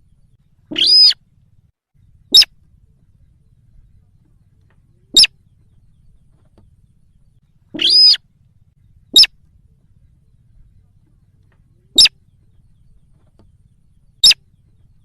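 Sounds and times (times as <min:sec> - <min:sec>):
shrill bird calls: 0:00.0 - 0:01.2, 0:02.1 - 0:02.6, 0:05.1 - 0:05.5, 0:07.7 - 0:08.2, 0:09.0 - 0:09.5, 0:11.9 - 0:12.3, 0:14.2 - 0:14.7
harsh bird call: 0:00.6 - 0:01.2, 0:02.2 - 0:02.6, 0:07.7 - 0:08.2, 0:09.2 - 0:09.4.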